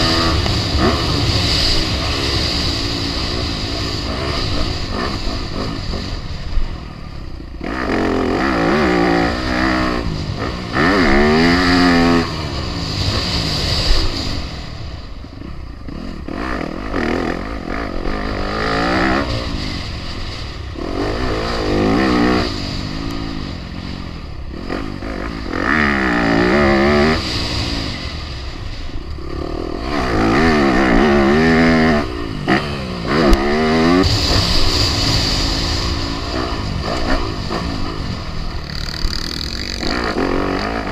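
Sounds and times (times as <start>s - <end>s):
dirt bike engines revving: 0.0s - 40.9s.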